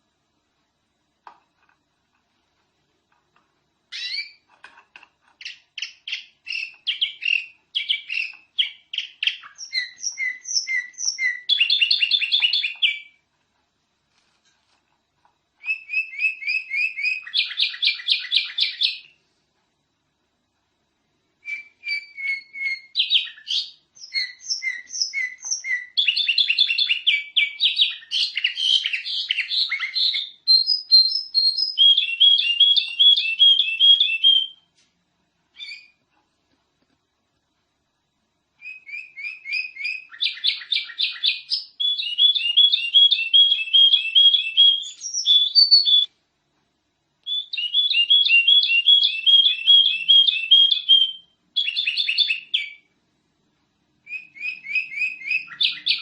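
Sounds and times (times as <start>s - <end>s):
canary singing trilled song: 3.8s - 13.3s, 15.6s - 19.2s, 21.4s - 34.7s, 35.5s - 36.1s, 38.5s - 46.2s, 47.2s - 53.0s, 54.0s - 56.0s.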